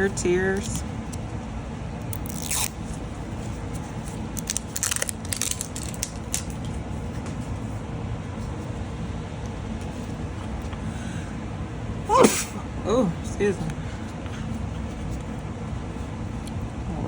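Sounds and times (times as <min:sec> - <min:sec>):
low background hum: 0:00.0 - 0:17.0
plastic packaging crinkling: 0:04.2 - 0:06.6.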